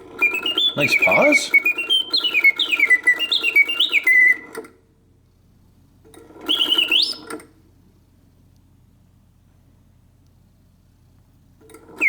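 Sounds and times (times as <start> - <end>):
mechanical bird whistling song: 0.2 - 4.4, 6.5 - 7.4.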